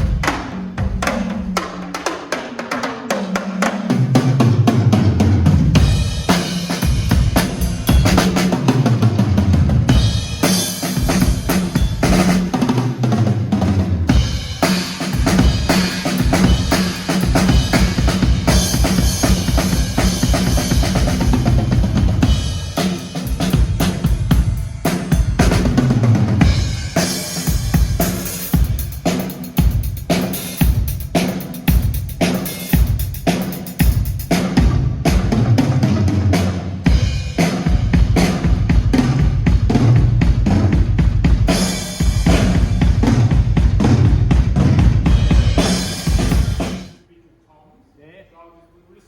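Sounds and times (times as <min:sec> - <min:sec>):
drum kit beat: 0:00.0 - 0:47.0
rock music: 0:05.6 - 0:34.6, 0:41.4 - 0:47.0.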